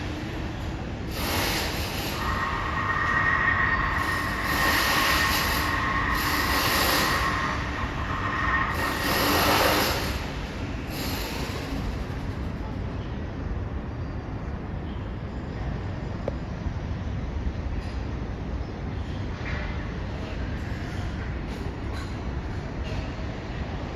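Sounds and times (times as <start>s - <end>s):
power tool grinding whine: 1.1s - 10.4s.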